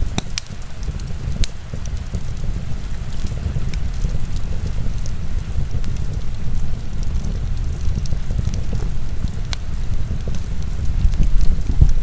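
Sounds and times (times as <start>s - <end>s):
heavy rain: 0.0s - 12.0s
wood fire crackling and popping: 0.0s - 12.0s.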